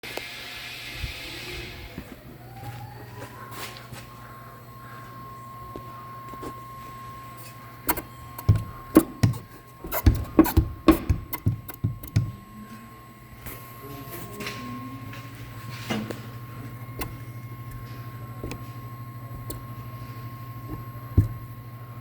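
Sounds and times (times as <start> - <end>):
steady low hum: 2.2 - 22.0
sharp irregular thumps: 7.9 - 12.4, 18.4 - 18.6, 19.3 - 19.8, 20.7 - 21.6.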